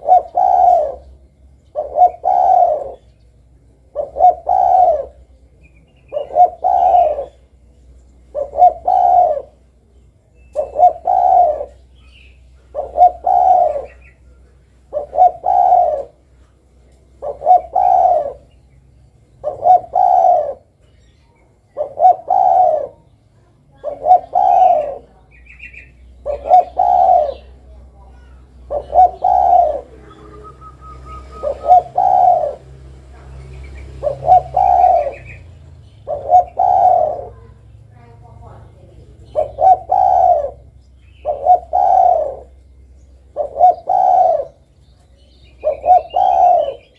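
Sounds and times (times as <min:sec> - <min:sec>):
dove cooing: 0:00.0 - 0:18.7, 0:19.3 - 0:46.9
faint high chirp: 0:20.8 - 0:21.9, 0:23.0 - 0:31.8.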